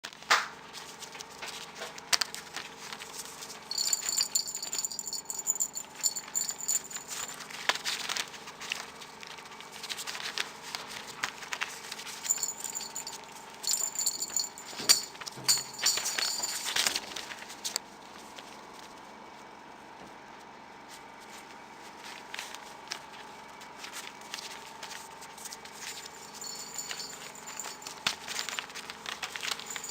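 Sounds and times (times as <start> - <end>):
small bell jingling: 3.7 - 7.4, 12.1 - 17.0, 25.9 - 28.6, 29.2 - 29.9.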